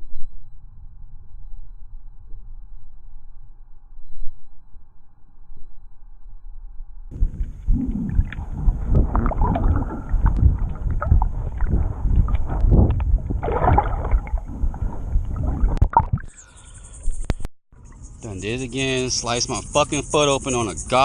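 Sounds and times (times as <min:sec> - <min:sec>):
water splashing and sloshing: 0:07.2 - 0:16.4.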